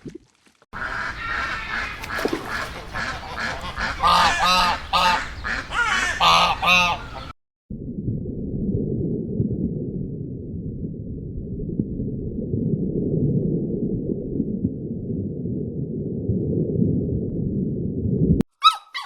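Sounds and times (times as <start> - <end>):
loud honking bird calls: 0.8 - 7.3
softer bird calls: 0.8 - 7.3
low rumbling noise: 7.7 - 18.4.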